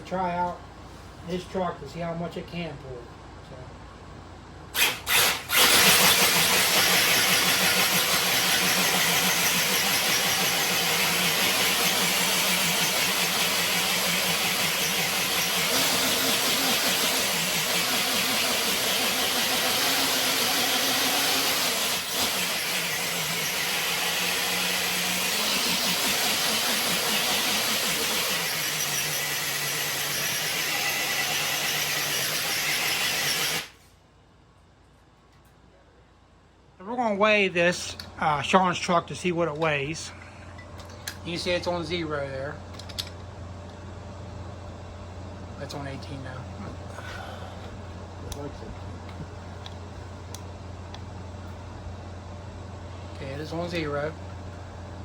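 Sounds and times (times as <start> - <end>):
electric rc truck motor whining: 4.8 - 29.0.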